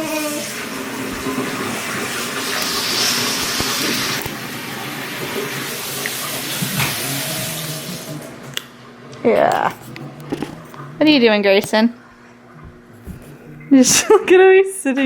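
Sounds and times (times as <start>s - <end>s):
tap water running into sink: 0.0s - 9.6s.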